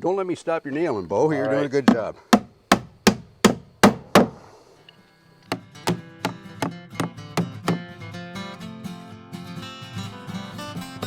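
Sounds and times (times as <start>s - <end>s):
hammer hitting nail into wood: 1.9s - 4.4s, 5.5s - 7.9s
strummed acoustic guitar: 5.5s - 11.0s.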